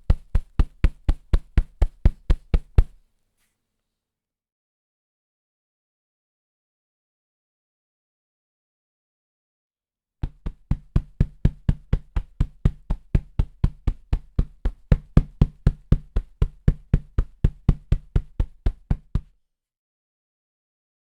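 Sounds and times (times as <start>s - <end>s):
hand thumping sofa cushion: 0.0s - 3.0s, 10.2s - 19.3s.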